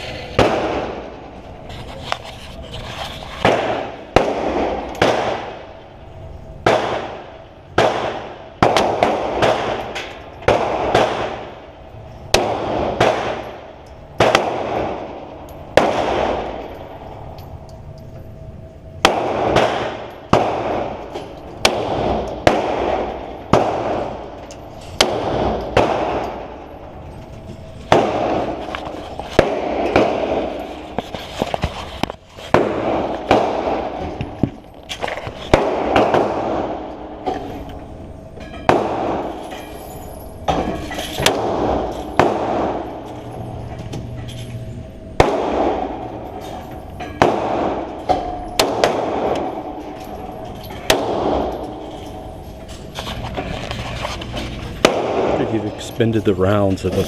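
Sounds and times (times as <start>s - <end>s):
pistol shots: 0.3s - 1.2s, 3.4s - 5.7s, 6.6s - 11.7s, 12.3s - 16.9s, 19.0s - 26.7s, 27.8s - 30.9s, 32.5s - 34.5s, 35.5s - 37.5s, 38.7s - 39.5s, 40.5s - 43.6s, 45.2s - 52.4s, 54.8s - 55.8s.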